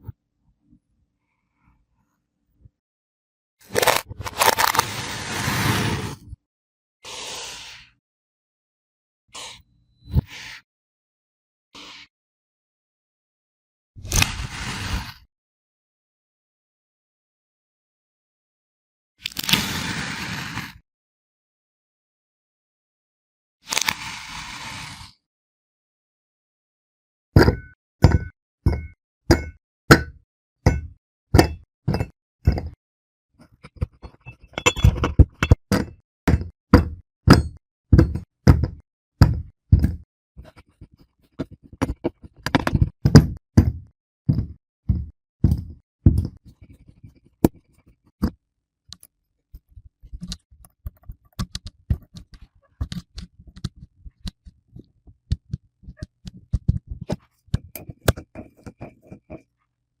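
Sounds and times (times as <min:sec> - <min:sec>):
blade slicing kinetic sand: 0:03.7 - 0:06.2, 0:14.0 - 0:15.3, 0:19.3 - 0:20.8.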